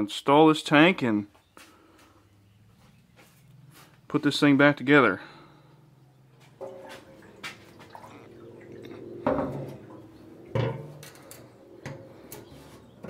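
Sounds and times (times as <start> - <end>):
metal clanks and knocks: 8.9 - 13.0.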